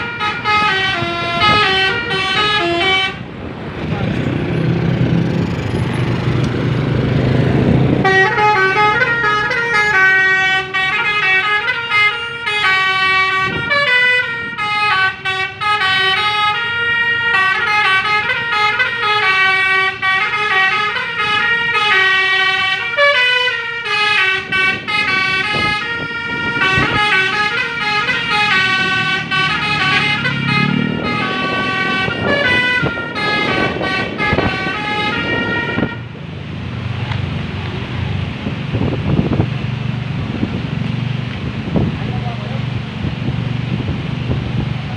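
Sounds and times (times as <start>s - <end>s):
multi-tone bus horn tune: 0.0s - 3.3s, 7.9s - 36.2s.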